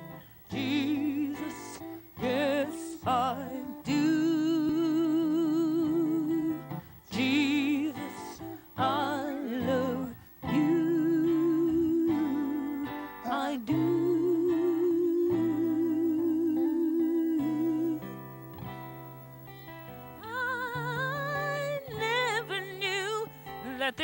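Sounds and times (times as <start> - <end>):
guitar accompaniment: 0.0 - 24.0
wordless held sung notes: 0.0 - 24.0.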